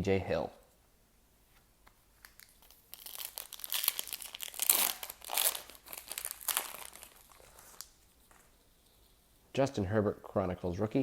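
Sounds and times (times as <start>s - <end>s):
wrapper tearing and crinkling: 2.2s - 8.0s.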